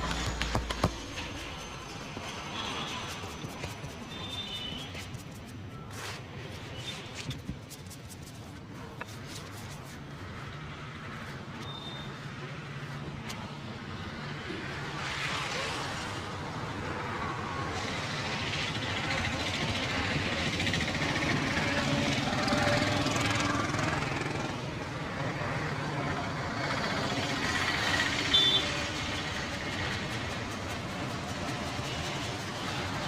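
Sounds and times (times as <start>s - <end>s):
traffic running steadily: 0.0s - 33.0s.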